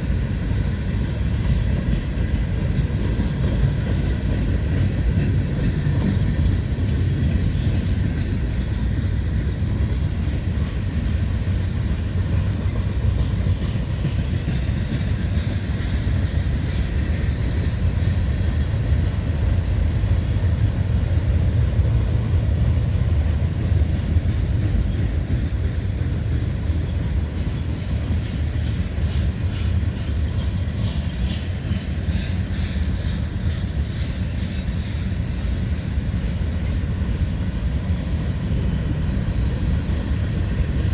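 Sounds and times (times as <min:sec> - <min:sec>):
train wheels rumbling on rail: 0:00.0 - 0:40.9.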